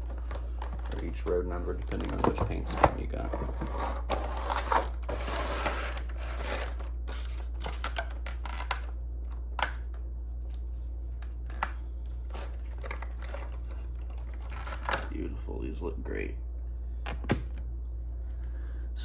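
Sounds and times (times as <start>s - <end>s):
steady low hum: 0.0s - 19.0s
packaging rustling and crinkling: 12.2s - 15.1s.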